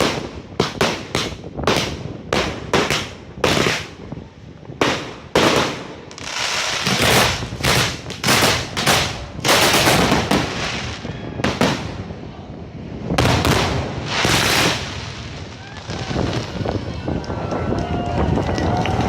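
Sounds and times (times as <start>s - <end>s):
dense fireworks crackling: 0.0s - 19.0s
fireworks shells bursting: 4.8s - 11.8s.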